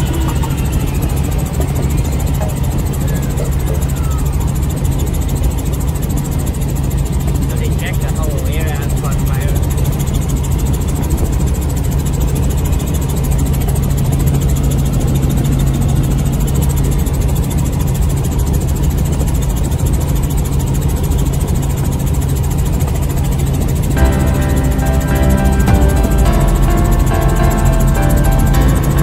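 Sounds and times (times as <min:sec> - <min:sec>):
helicopter engine and rotor: 0:00.0 - 0:29.0
music: 0:24.0 - 0:29.0.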